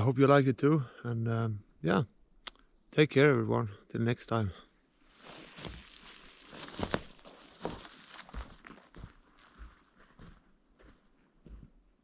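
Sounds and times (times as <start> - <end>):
footsteps crunching in snow: 5.0 - 11.7.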